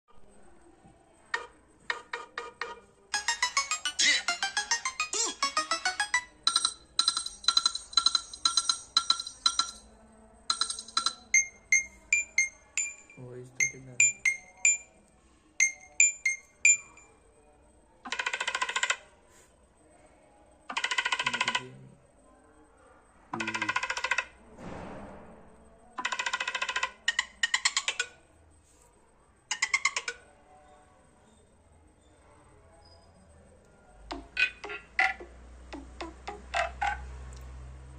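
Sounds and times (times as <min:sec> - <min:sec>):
rapid electronic beeps: 0:01.4 - 0:09.9, 0:10.5 - 0:14.9
phone ringtone chime: 0:03.1 - 0:09.9, 0:10.5 - 0:15.0, 0:15.6 - 0:17.1.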